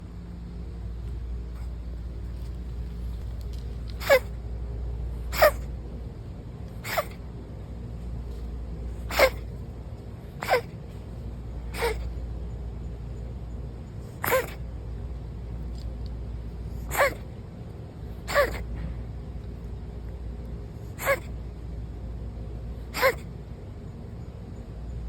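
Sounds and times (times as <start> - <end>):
cat sneezing or coughing: 3.9 - 4.4, 5.3 - 5.7, 6.8 - 7.3, 8.9 - 9.6, 10.3 - 10.9, 11.6 - 12.2, 14.0 - 14.7, 16.7 - 17.4, 18.1 - 18.8, 20.8 - 21.4, 22.8 - 23.3.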